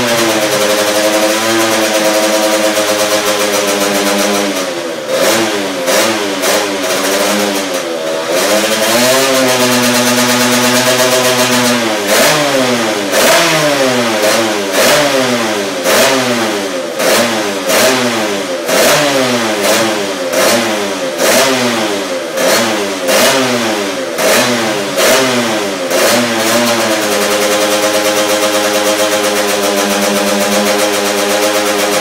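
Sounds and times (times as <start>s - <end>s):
two-stroke engine revving: 0.0s - 32.0s.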